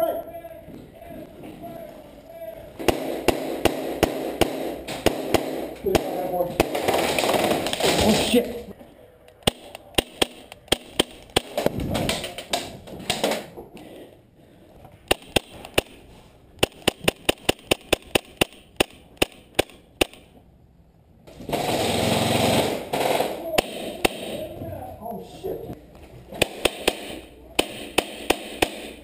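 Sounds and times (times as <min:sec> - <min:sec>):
airsoft gun shots: 0:02.8 - 0:08.4, 0:16.6 - 0:20.3, 0:26.4 - 0:29.0.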